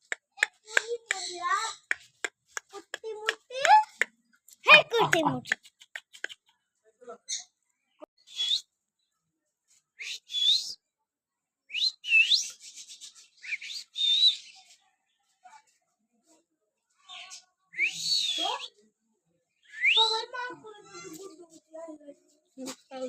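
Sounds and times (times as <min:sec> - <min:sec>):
bird whistled calls: 0:08.2 - 0:08.7, 0:10.0 - 0:10.8, 0:11.7 - 0:14.6, 0:17.7 - 0:18.8.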